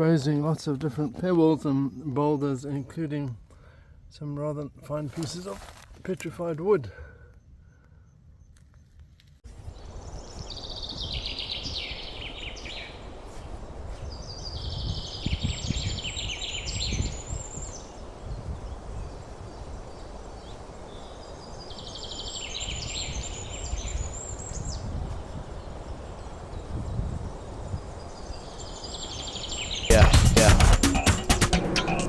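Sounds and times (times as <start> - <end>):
songbird chattering song: 0.0 - 3.6, 9.8 - 30.2.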